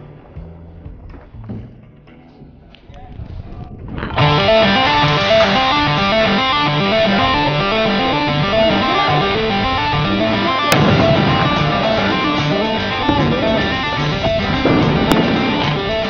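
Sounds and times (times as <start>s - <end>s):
guitar-driven rock music: 4.0s - 16.0s.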